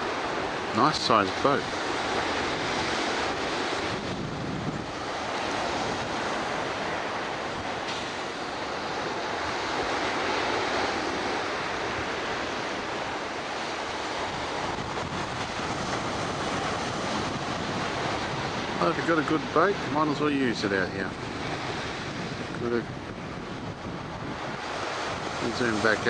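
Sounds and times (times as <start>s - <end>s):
ocean waves breaking on beach: 0.0s - 26.0s
wind buffeting microphone: 0.0s - 26.0s.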